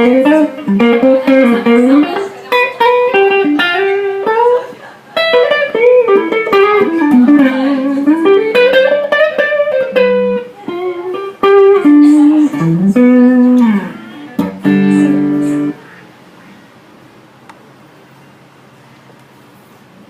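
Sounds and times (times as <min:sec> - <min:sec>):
guitar chord ringing: 0:00.0 - 0:16.0
electric guitar melody with bends: 0:00.0 - 0:16.1.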